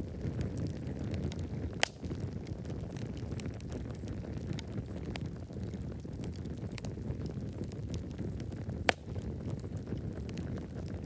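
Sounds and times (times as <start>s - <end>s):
loud pop of fire: 0.0s - 3.6s, 7.6s - 10.4s
campfire crackling: 0.0s - 11.0s.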